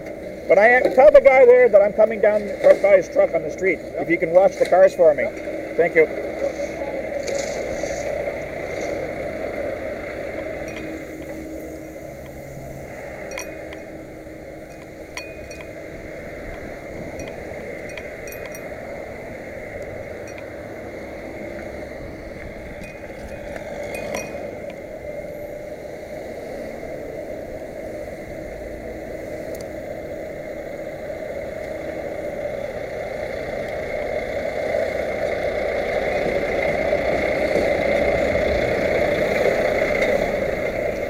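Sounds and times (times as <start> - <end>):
vehicle engine running: 0.0 - 41.0
light clink: 10.4 - 12.4, 13.2 - 20.6, 22.4 - 24.8.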